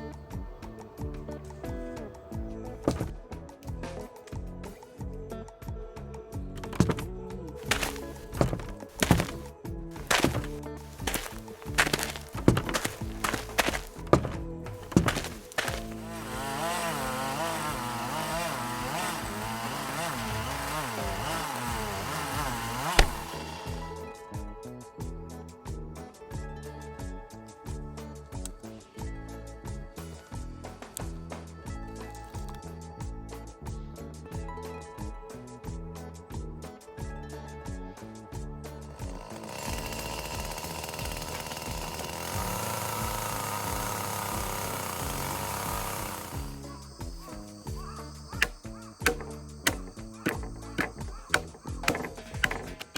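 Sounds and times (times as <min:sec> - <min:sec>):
chainsaw cutting wood: 0:02.8 - 0:03.2, 0:06.6 - 0:24.1, 0:38.9 - 0:52.9.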